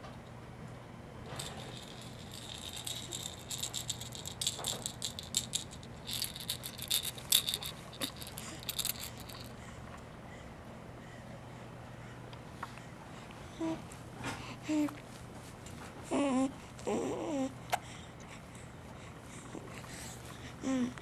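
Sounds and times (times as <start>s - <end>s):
rattling clicks: 1.3s - 9.5s.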